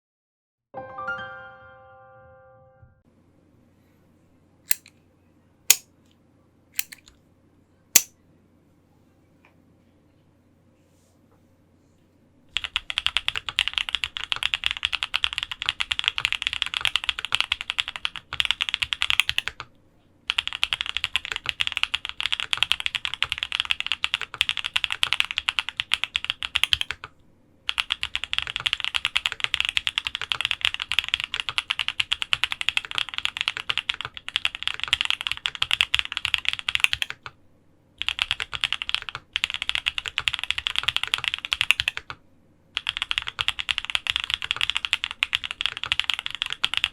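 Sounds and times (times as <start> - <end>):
fast typing on mechanical keyboard: 12.5 - 19.7, 20.3 - 27.1, 27.7 - 37.3, 38.0 - 42.2, 42.8 - 46.9.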